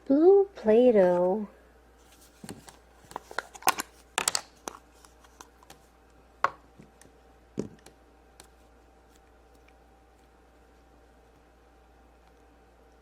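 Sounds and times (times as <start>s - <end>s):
packaging crinkling: 2.3s - 5.8s
package clicks: 3.1s - 4.8s.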